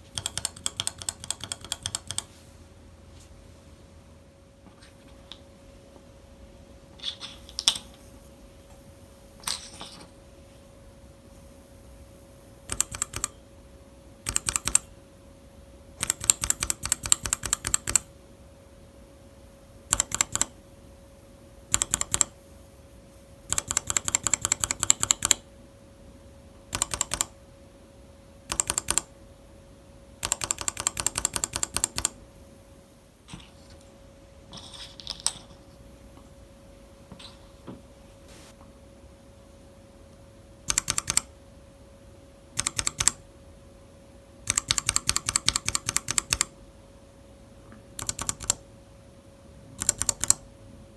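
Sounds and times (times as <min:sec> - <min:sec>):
faint steady hum: 0:00.0 - 0:50.9
mechanical keyboard typing: 0:00.1 - 0:02.3, 0:12.7 - 0:13.4, 0:14.2 - 0:14.9, 0:16.0 - 0:18.1, 0:19.9 - 0:20.6, 0:21.7 - 0:22.4, 0:23.5 - 0:25.4, 0:26.7 - 0:27.4, 0:28.5 - 0:29.1, 0:30.2 - 0:32.2, 0:40.6 - 0:41.3, 0:42.6 - 0:43.2, 0:44.4 - 0:46.5, 0:48.0 - 0:48.6, 0:49.8 - 0:50.4.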